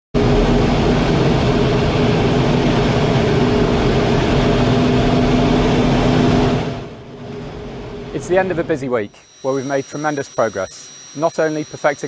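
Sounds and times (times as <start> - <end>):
jet engine roar: 0.2 - 12.0.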